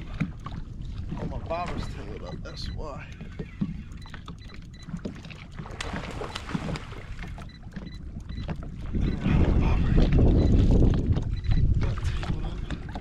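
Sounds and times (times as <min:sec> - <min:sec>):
wind buffeting microphone: 0:05.6 - 0:13.0.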